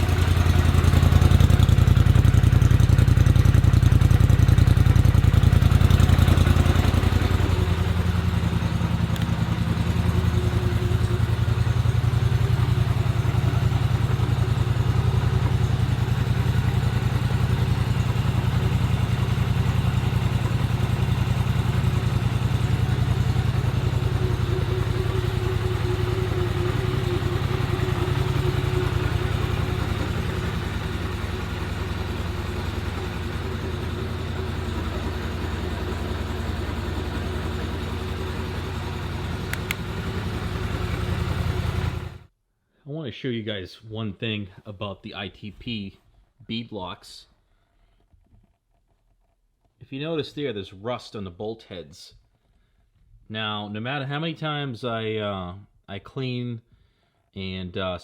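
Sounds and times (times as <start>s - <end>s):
atv engine idling: 0.0s - 42.3s.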